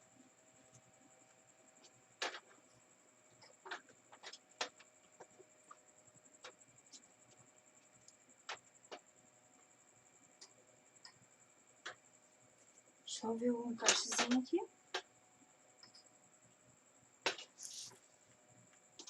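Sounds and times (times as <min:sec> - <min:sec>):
faint high-pitched whine: 0:00.0 - 0:19.0
small parts clicking and tapping: 0:01.8 - 0:09.1, 0:10.4 - 0:11.2, 0:13.8 - 0:15.1, 0:15.8 - 0:16.1, 0:17.2 - 0:18.0.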